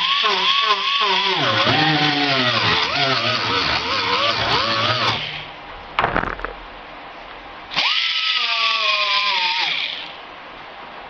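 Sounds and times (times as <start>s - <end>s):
grinder motor whine: 0.0s - 5.5s
knocks: 6.0s - 6.6s.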